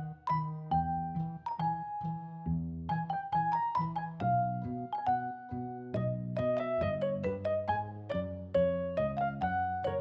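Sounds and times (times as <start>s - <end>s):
cheerful keyboard tune: 0.0s - 10.0s
bass line: 5.5s - 10.0s.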